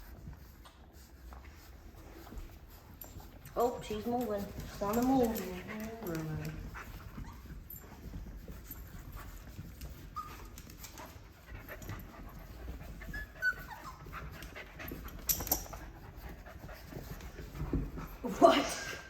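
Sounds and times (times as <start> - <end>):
scuffling and scratching: 0.0 - 18.8
dog panting: 0.0 - 19.0.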